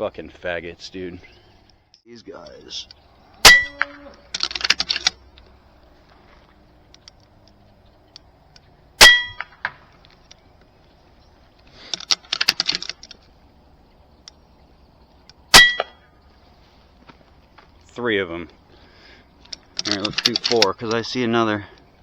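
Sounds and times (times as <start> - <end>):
mechanical clicking of rifle action: 4.3 - 5.2, 11.9 - 13.3, 19.4 - 21.0.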